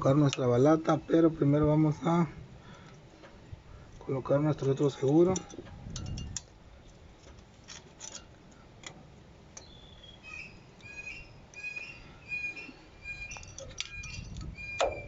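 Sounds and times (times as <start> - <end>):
metal parts clicking and tapping: 4.5 - 9.0, 13.2 - 15.0.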